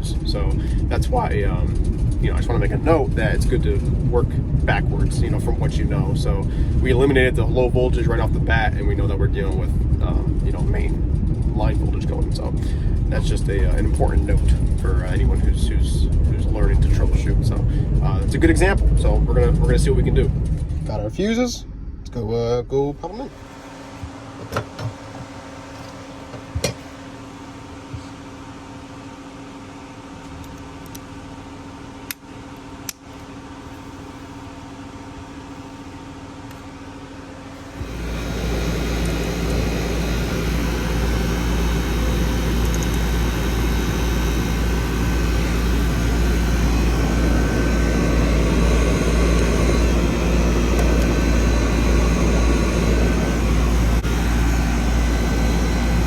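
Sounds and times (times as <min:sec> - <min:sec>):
low hum: 0:00.0 - 0:28.5, 0:32.9 - 0:56.0
air conditioner unit running: 0:00.0 - 0:56.0
sharp clicks: 0:42.6 - 0:43.1.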